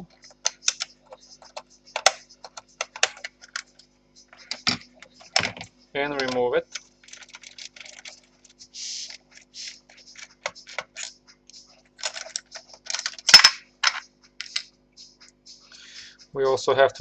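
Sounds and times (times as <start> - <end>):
laptop parts clicking and scraping: 0.2 - 14.7.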